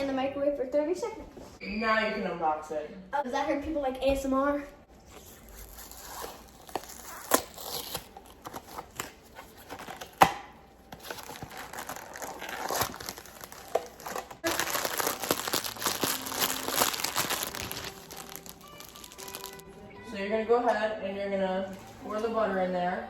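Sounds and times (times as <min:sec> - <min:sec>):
packaging crinkling and tearing: 0:05.2 - 0:10.3, 0:10.9 - 0:19.6.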